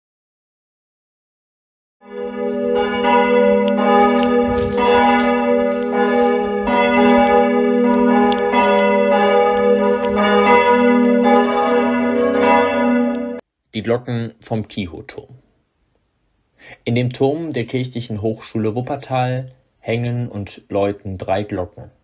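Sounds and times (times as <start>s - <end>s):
church bells ringing: 2.0s - 13.4s.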